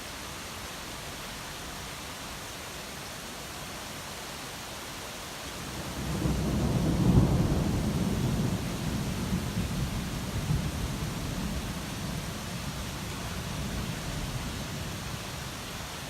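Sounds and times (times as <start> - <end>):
steady rain hiss: 0.0 - 16.0
low rumble of thunder: 5.7 - 15.1.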